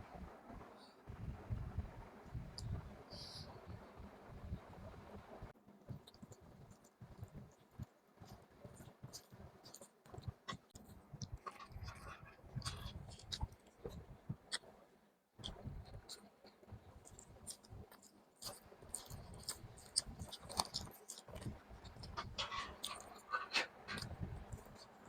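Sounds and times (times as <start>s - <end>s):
wet chewing mouth clicks: 5.9s - 14.7s, 15.4s - 23.3s.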